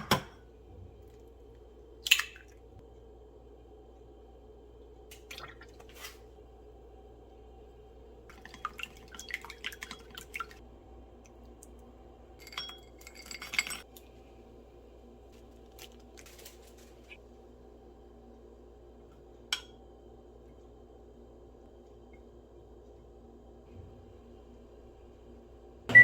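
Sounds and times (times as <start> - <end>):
steady low hum: 0.3 - 26.0
dishes and utensils clattering: 12.4 - 13.9.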